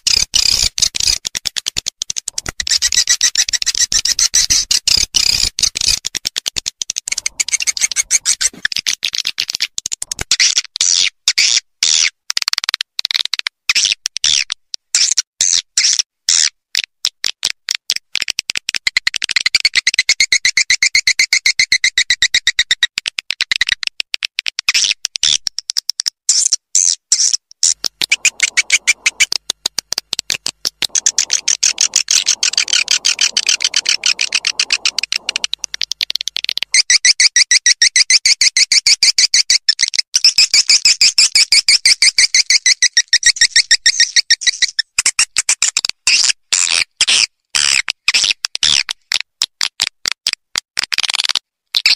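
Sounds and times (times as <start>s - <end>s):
swiftlets chirping and twittering: 7.1s - 8.6s, 28.0s - 29.3s, 30.9s - 35.7s.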